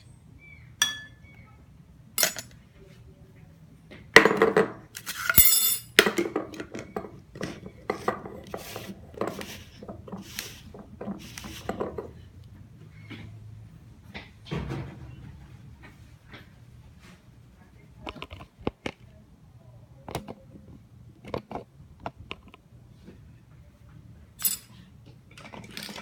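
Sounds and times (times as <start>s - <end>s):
dishes and utensils clattering: 0.8s - 1.3s, 2.2s - 2.5s.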